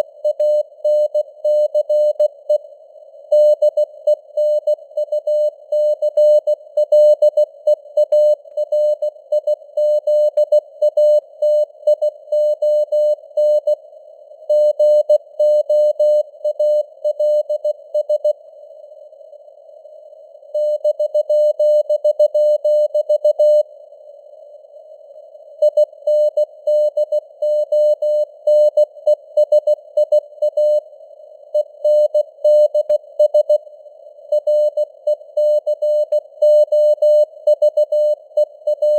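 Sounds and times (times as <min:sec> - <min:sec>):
morse code beeps: 0:35.4 - 0:38.9.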